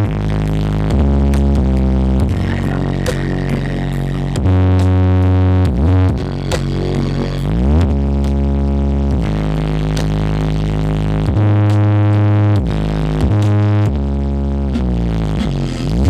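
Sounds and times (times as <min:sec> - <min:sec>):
deep held bass notes: 0:00.0 - 0:16.0
loud electronic dance music: 0:00.0 - 0:16.0
gliding pitch sweeps: 0:02.3 - 0:05.1.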